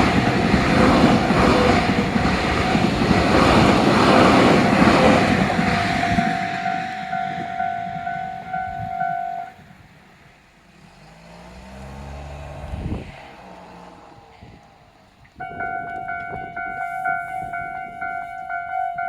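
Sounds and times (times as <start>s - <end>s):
railway crossing bell ringing: 0.0s - 10.5s, 15.4s - 19.0s
passing road vehicle hum: 0.0s - 19.0s.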